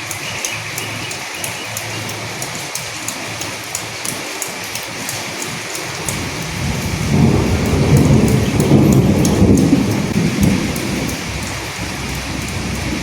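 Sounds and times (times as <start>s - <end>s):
steady rain: 0.0s - 13.0s
thunder rumbling: 6.0s - 13.0s.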